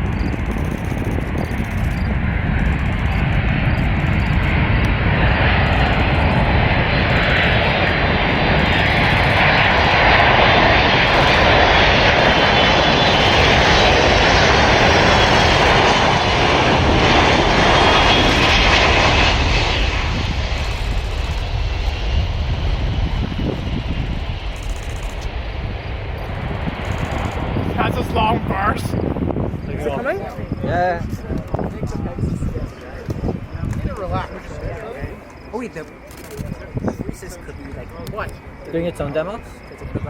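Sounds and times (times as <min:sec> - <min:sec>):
low rumble: 0:00.0 - 0:29.8
airplane engines passing by: 0:00.0 - 0:40.0.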